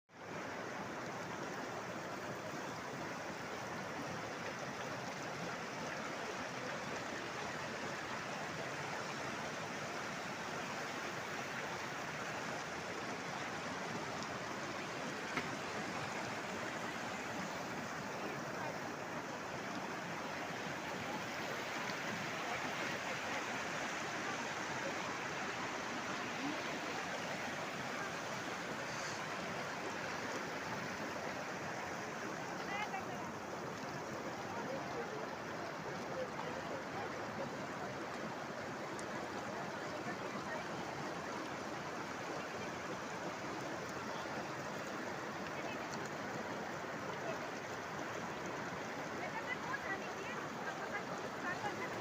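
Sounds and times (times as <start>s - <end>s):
river water rushing: 0.1s - 52.0s.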